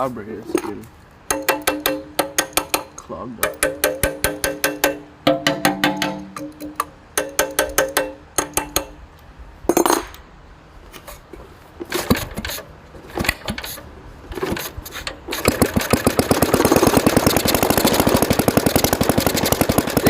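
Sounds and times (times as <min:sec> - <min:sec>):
metallic clicks and ringing: 0:01.3 - 0:09.0
engine pops and coughs: 0:11.8 - 0:20.0
small engine running: 0:15.3 - 0:20.0.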